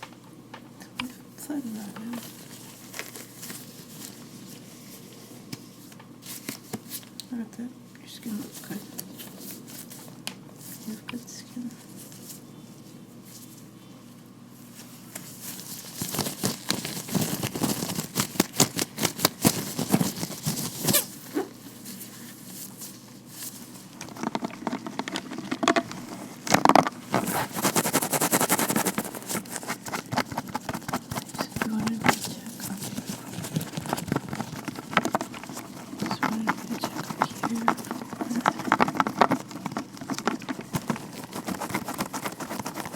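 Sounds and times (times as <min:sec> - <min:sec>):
gloved hands rubbing and tapping: 0:15.1 - 0:42.9.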